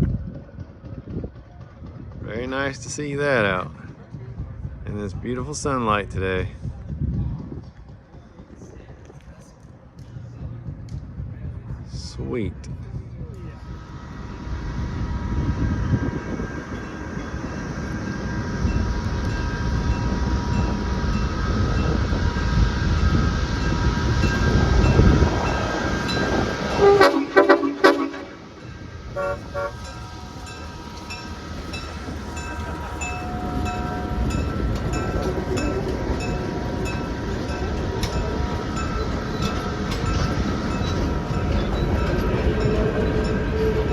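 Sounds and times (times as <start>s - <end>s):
train rumbling past: 0.0s - 43.9s
train horn toots: 14.0s - 40.2s.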